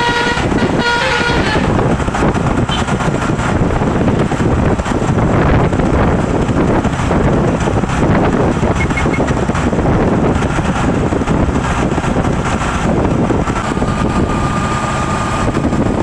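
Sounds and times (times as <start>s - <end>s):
bus horn notes: 0.0s - 3.0s
bus engine and road noise: 0.0s - 16.0s
wind buffeting microphone: 0.0s - 16.0s.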